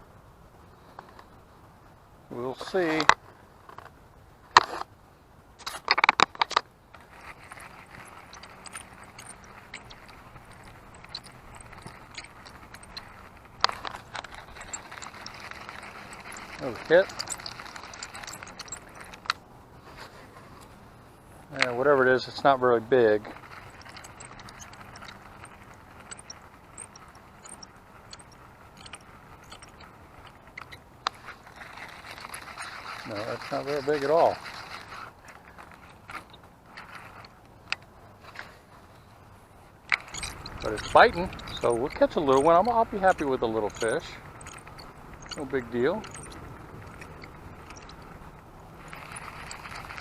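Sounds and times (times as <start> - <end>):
low steady hum: 0.0 - 50.0
fishing reel clicks and rattles: 5.6 - 19.4, 21.5 - 38.5, 39.8 - 50.0
reel hiss with light ticks: 22.5 - 38.6, 39.9 - 50.0.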